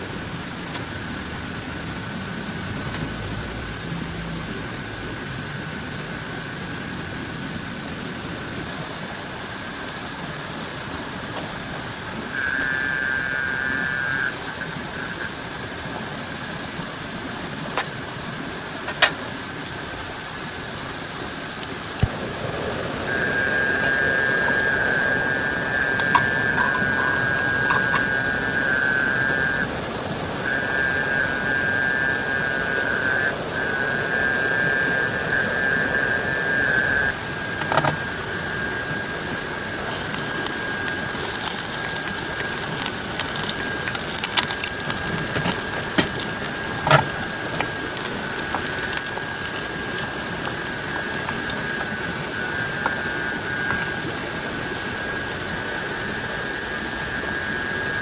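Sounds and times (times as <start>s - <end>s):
rain falling: 39.1s - 54.7s.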